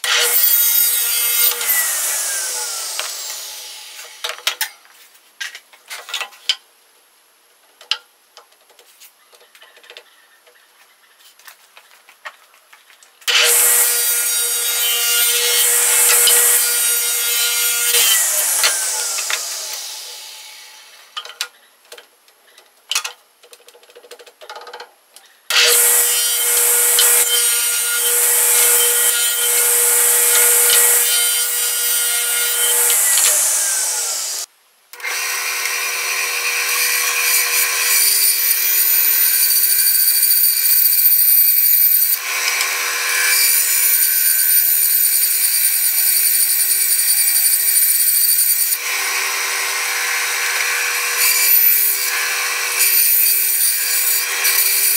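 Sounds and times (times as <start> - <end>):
power saw cutting wood: 0.0 - 4.6, 13.3 - 21.2, 25.5 - 54.9.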